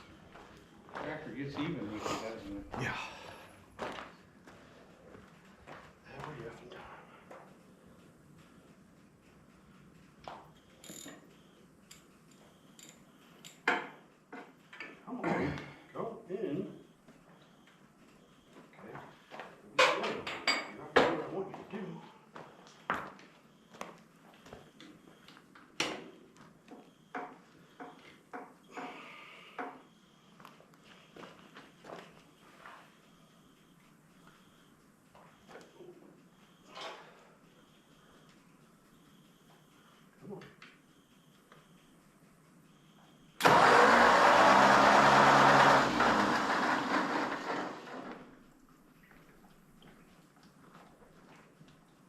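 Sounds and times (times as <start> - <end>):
motor machine running: 43.4 - 48.4.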